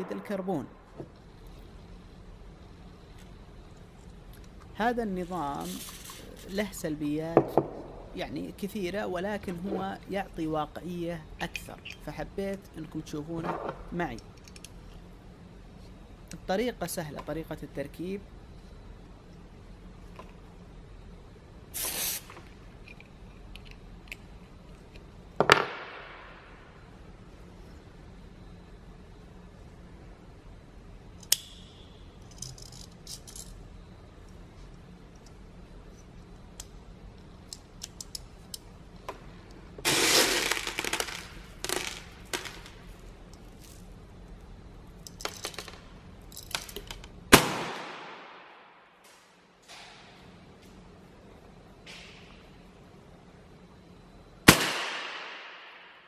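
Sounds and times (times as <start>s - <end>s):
pistol clicking and handling: 14.4s - 14.8s
gas hissing from cartridge: 21.7s - 22.4s
sharp crack: 47.3s - 49.2s, 54.5s - 56.0s.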